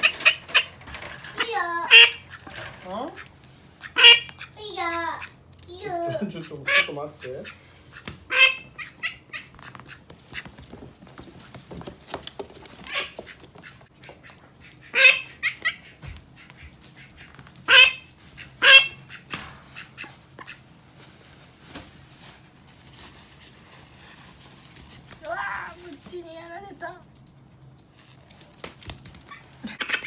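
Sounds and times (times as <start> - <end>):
duck quacking: 1.9 - 2.5, 3.8 - 4.6, 6.4 - 10.0, 12.9 - 20.6, 29.7 - 30.0.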